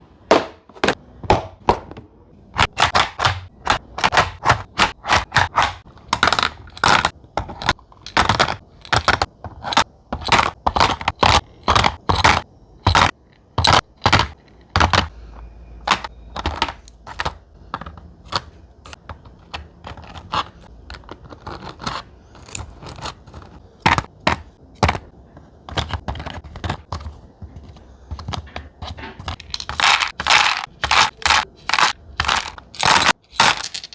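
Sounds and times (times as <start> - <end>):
snacks dropped into plastic box: 29.2 - 33.9.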